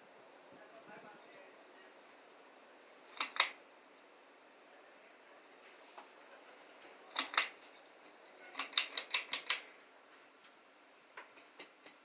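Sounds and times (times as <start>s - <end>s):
sharp clicks: 3.1s - 3.6s, 7.1s - 7.6s, 8.6s - 9.7s.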